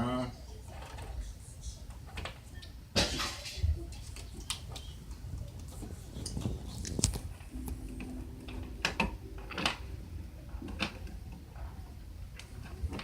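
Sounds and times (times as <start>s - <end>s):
wires being handled: 3.9s - 13.0s.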